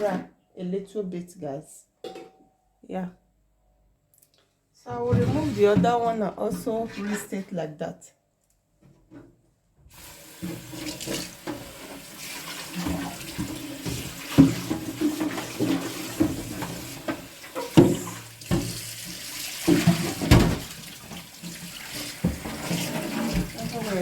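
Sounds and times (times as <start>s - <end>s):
tap water running into sink: 9.9s - 24.0s
tray knocking against sink: 12.9s - 18.8s, 19.7s - 20.8s.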